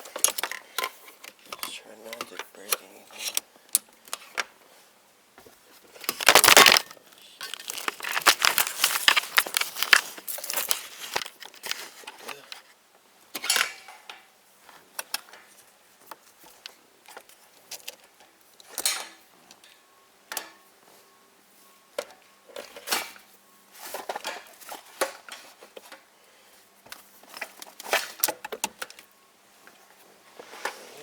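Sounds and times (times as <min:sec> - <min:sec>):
hands handling plastic and metal parts: 0:00.0 - 0:04.4, 0:05.9 - 0:12.7.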